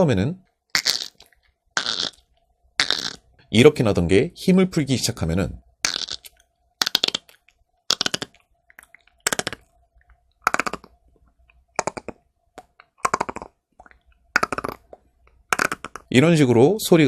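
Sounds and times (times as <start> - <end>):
beatbox tongue click roll: 0.8 - 2.2, 2.8 - 3.2, 5.8 - 9.7, 10.4 - 11.0, 11.8 - 16.1.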